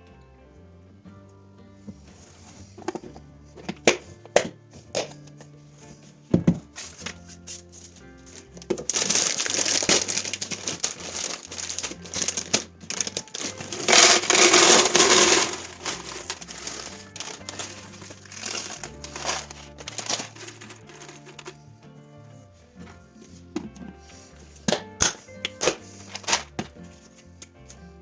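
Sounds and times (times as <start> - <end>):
background music: 0.0 - 28.0
plastic packaging crinkling: 8.2 - 21.6, 25.6 - 26.7.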